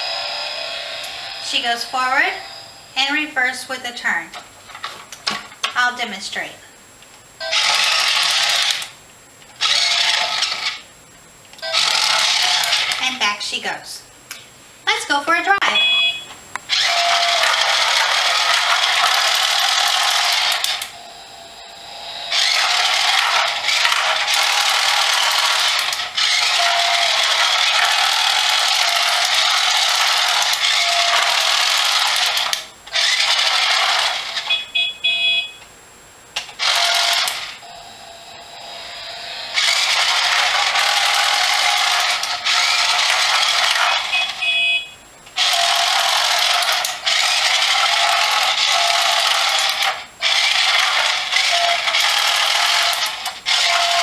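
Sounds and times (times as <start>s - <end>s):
toy car motor whirring: 7.4s - 8.9s, 9.6s - 10.8s, 11.6s - 13.0s, 16.7s - 21.2s, 22.1s - 34.6s, 36.4s - 37.7s, 38.3s - 44.5s, 45.3s - 54.0s
short electronic beeps: 15.6s - 16.3s, 34.4s - 35.6s, 44.0s - 45.0s.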